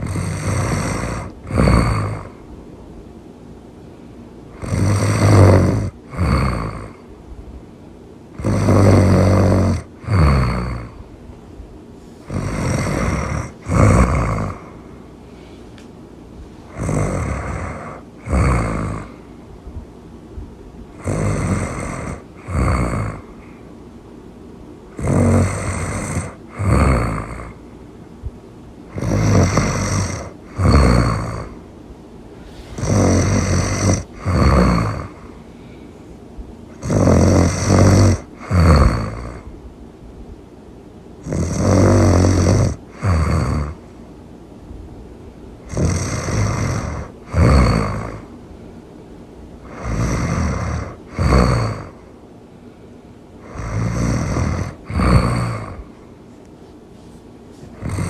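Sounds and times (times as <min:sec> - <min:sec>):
cartoonish snoring: 0:00.0 - 0:02.5, 0:04.5 - 0:07.1, 0:08.3 - 0:11.0, 0:12.2 - 0:14.9, 0:16.7 - 0:19.3, 0:20.9 - 0:23.6, 0:24.9 - 0:27.6, 0:28.9 - 0:31.6, 0:32.4 - 0:35.4, 0:36.7 - 0:39.5, 0:41.2 - 0:43.9, 0:45.6 - 0:48.3, 0:49.6 - 0:52.0, 0:53.4 - 0:56.0, 0:57.7 - 0:58.0.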